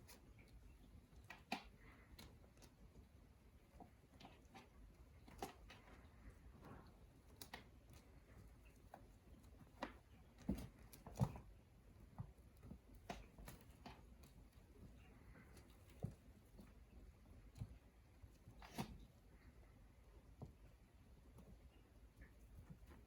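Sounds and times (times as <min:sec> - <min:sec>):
kittens' paws tapping on floor: 0:00.0 - 0:23.0.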